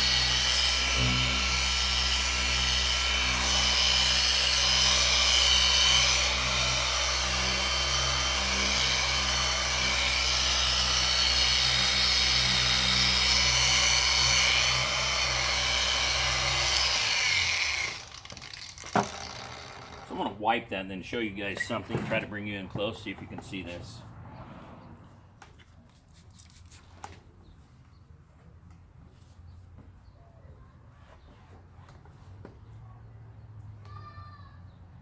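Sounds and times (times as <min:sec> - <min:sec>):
electric polisher whining: 0:00.0 - 0:20.2.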